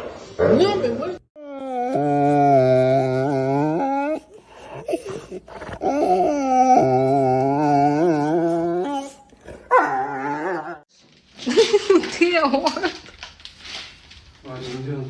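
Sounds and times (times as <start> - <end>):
dog howling: 1.4 - 10.9.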